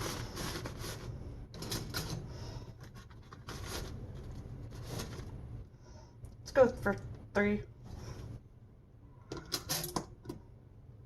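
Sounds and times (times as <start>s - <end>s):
short scrapes and knocks: 0.0s - 5.4s
bag scraping and rustling: 4.6s - 5.4s.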